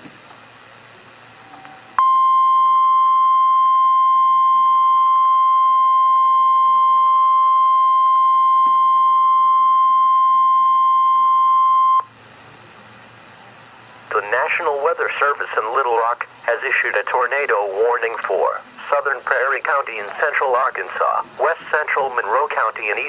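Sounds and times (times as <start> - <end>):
steady high alarm tone: 2.0 - 12.1.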